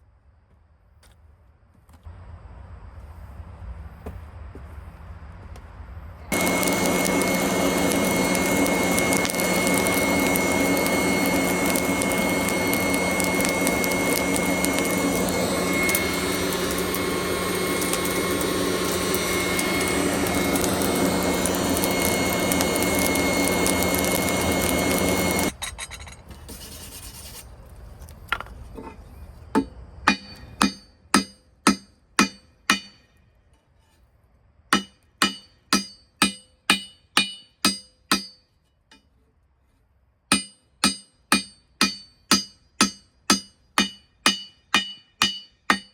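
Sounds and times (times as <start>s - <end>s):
power tool whining: 6.3s - 25.6s.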